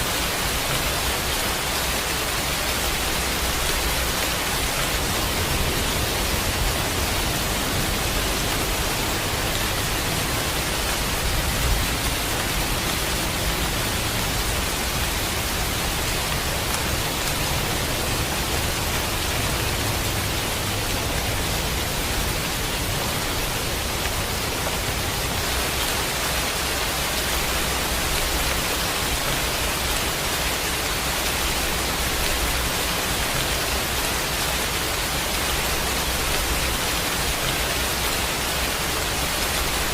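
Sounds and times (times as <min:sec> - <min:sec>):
rain downpour hissing: 0:00.0 - 0:39.9.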